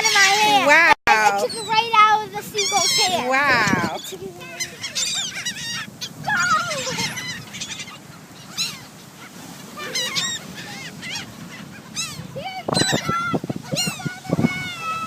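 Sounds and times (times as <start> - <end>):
gulls calling: 0.0 - 15.0.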